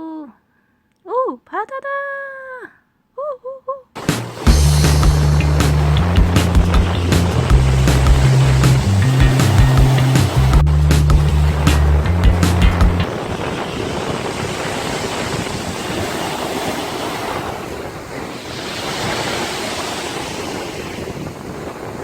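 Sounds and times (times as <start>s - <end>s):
waves washing onto pebble beach: 4.0s - 10.6s, 11.2s - 22.0s.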